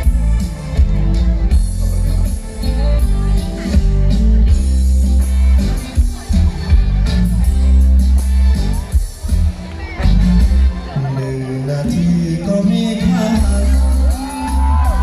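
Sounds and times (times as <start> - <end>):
live band music with heavy bass: 0.0 - 15.0.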